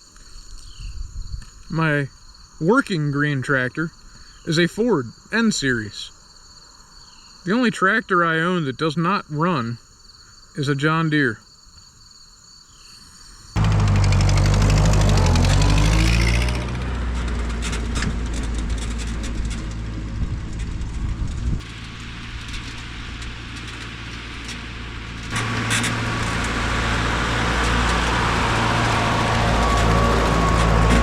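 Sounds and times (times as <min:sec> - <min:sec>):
engine running: 0:13.6 - 0:31.0.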